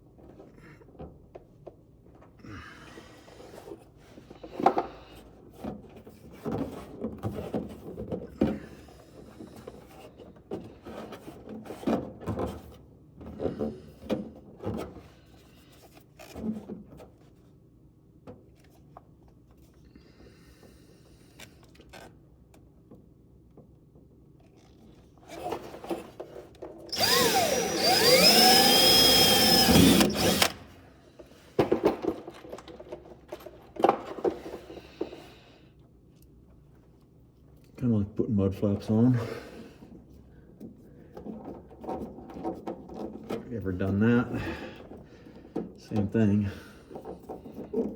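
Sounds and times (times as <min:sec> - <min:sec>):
power drill running: 0:26.9 - 0:30.8.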